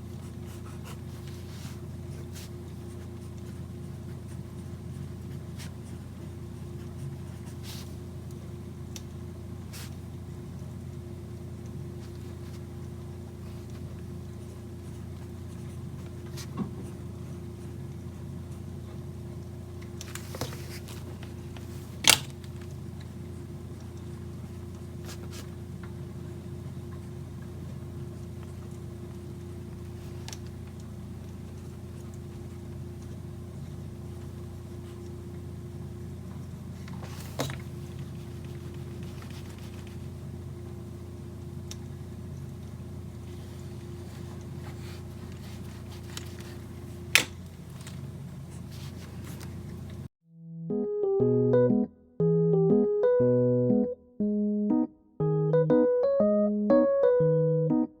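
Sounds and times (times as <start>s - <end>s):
low room hum: 0.0s - 58.0s
desk handling rustle: 19.9s - 22.8s, 43.3s - 50.1s.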